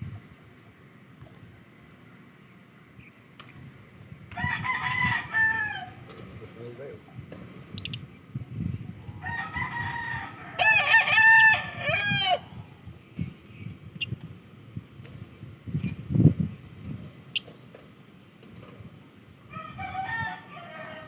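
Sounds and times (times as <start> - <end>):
rooster crowing: 4.3 - 6.2, 9.1 - 12.7, 19.5 - 21.0
lovebirds chirping: 7.7 - 8.8.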